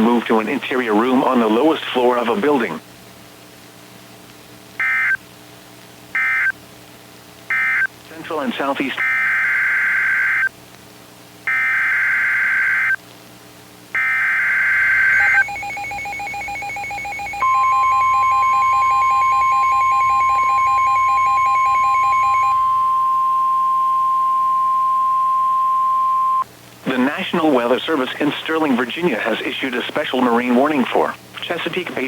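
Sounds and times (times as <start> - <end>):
steady warning alarm tone: 4.8 - 5.2, 6.2 - 6.5, 7.5 - 7.9, 9.0 - 10.5, 11.5 - 13.0, 14.0 - 26.4
fast electronic beeping: 14.0 - 23.1.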